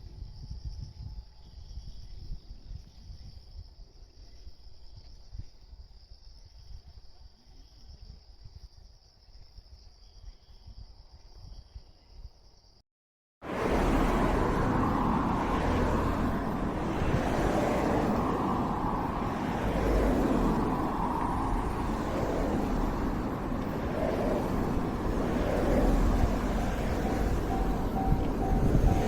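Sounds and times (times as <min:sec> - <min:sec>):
heavy vehicle rumbling past: 0:13.4 - 0:29.0.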